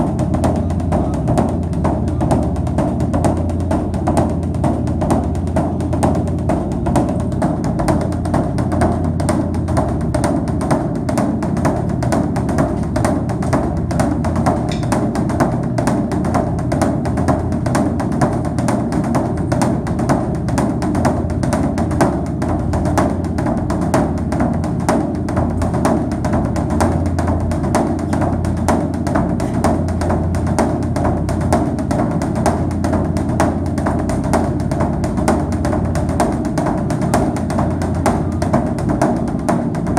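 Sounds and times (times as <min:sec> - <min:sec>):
fast percussion beat: 0:00.0 - 0:39.9
low bass: 0:00.0 - 0:39.9.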